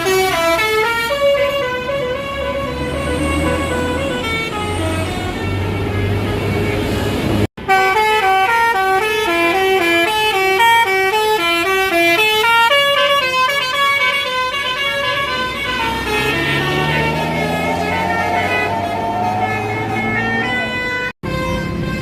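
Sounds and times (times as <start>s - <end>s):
musical bus air horn: 0.0s - 22.0s
low engine note rising: 15.0s - 21.1s.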